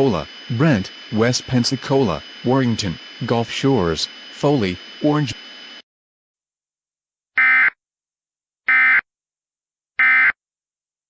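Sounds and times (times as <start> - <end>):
digital warble data tones: 0.0 - 5.7.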